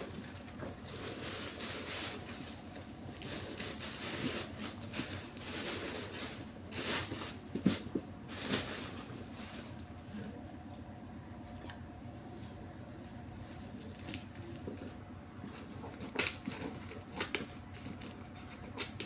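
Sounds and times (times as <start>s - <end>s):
packaging rustling: 0.0s - 9.8s
sharp crinkles and knocks: 0.0s - 10.2s, 13.1s - 19.0s.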